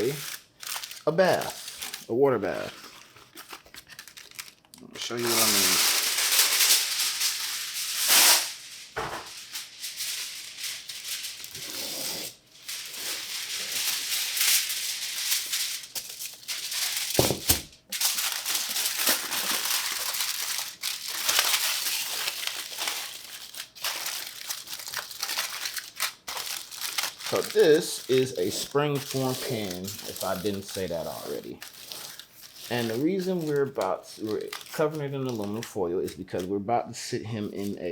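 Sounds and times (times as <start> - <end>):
aluminum foil crinkling: 0.0 - 36.5, 37.4 - 37.9.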